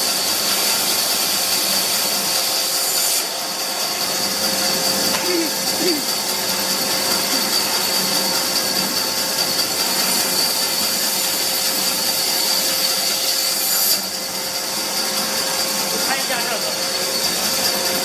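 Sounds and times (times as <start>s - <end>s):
machine humming: 4.1s - 10.1s.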